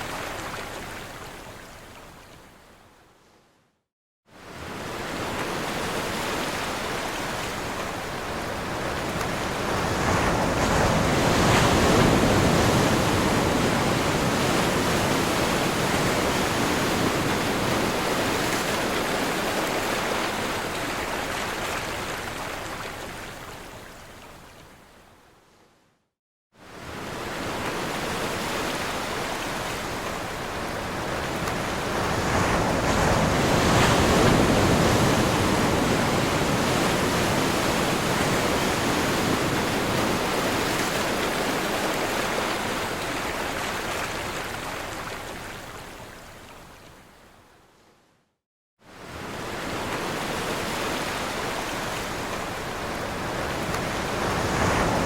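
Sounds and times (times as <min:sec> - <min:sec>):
waves breaking: 0:26.8 - 0:46.6, 0:48.9 - 0:55.0.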